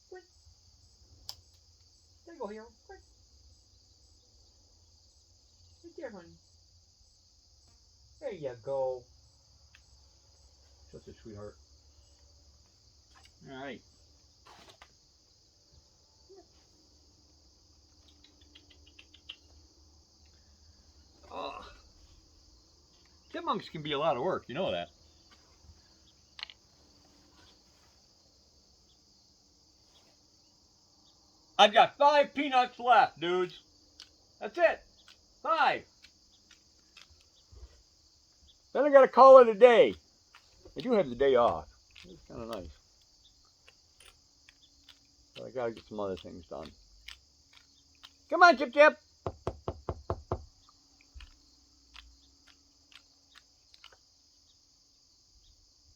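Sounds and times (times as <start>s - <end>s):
insects chirring: 0.0s - 55.9s
faint clicks: 1.2s - 1.9s, 18.0s - 19.6s
sharp taps or knocks: 49.3s - 50.5s.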